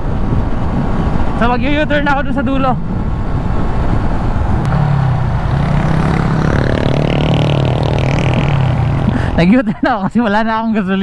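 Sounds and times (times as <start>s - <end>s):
wind and road noise: 0.0s - 11.0s
motorcycle engine running: 3.5s - 9.5s.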